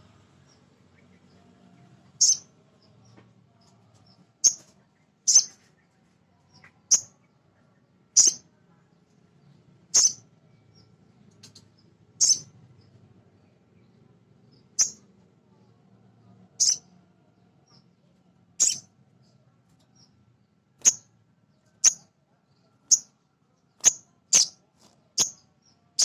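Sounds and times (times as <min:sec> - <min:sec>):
bird chip calls: 0:02.2 - 0:02.4, 0:05.3 - 0:05.6, 0:08.2 - 0:08.4, 0:10.0 - 0:10.2, 0:12.2 - 0:12.5, 0:14.8 - 0:15.0, 0:16.6 - 0:16.8, 0:18.6 - 0:18.8, 0:23.8 - 0:24.6.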